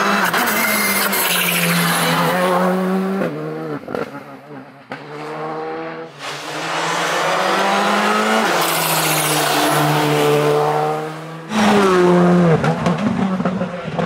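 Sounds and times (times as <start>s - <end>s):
rally car engine at full throttle: 0.0s - 14.0s.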